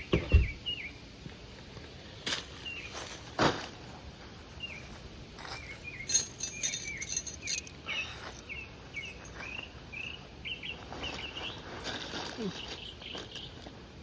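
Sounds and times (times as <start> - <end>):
birds chirping: 4.5 - 11.7.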